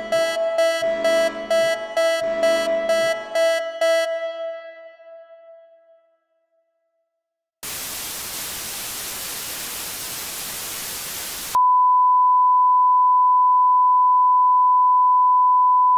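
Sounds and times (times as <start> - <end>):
television static hiss: 7.6 - 11.6
steady broadcast test tone: 7.6 - 12.2.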